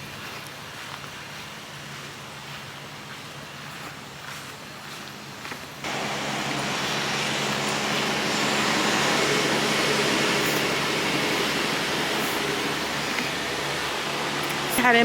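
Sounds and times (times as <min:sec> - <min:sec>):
loud rushing noise: 0:05.8 - 0:15.0.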